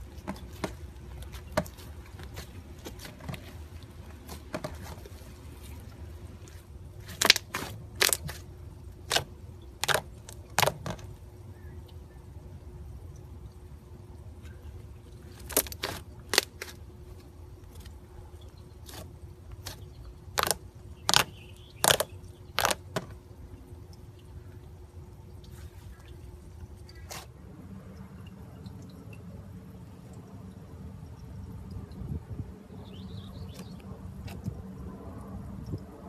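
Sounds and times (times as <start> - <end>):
slime popping and clicking: 20.4 - 22.8.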